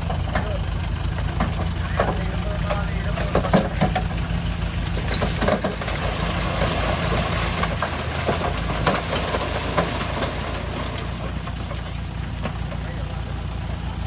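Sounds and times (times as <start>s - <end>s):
diesel engine idling: 0.0s - 14.0s.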